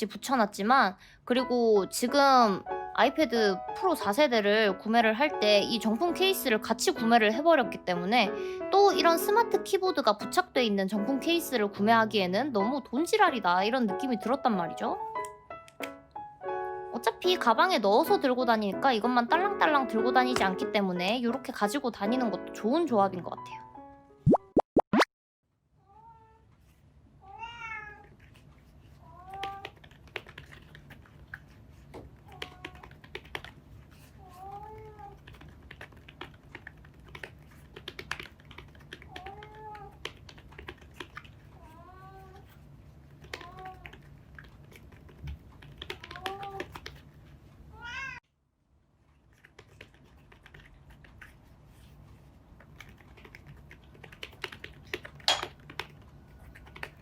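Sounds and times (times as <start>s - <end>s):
cat meowing: 25.9s - 26.4s, 27.2s - 28.1s, 34.2s - 35.2s, 41.6s - 42.4s, 47.7s - 48.2s.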